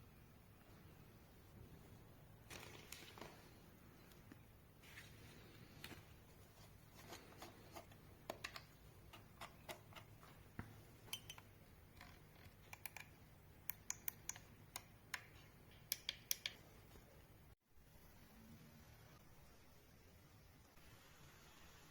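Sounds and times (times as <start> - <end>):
plastic parts clicking: 7.1 - 16.7.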